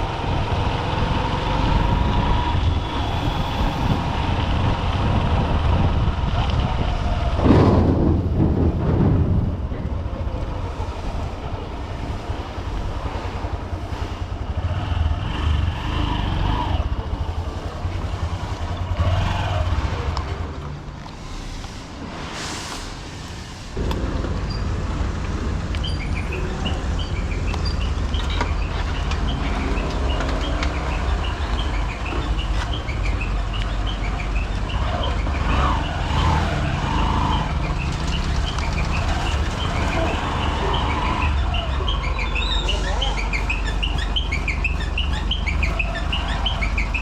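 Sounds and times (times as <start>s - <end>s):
wind rumble on microphone: 0.0s - 15.4s
motorcycle engine running: 0.0s - 20.8s, 23.8s - 47.0s
traffic hum: 0.0s - 47.0s
birds chirping: 25.8s - 47.0s.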